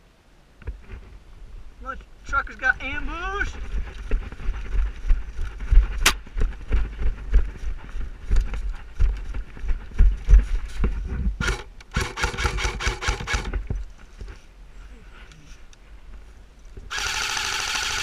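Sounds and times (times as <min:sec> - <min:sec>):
wind on microphone: 0:02.8 - 0:11.6
low thuds from movement: 0:03.5 - 0:11.6
airsoft gun firing sharp shots: 0:11.4 - 0:13.6.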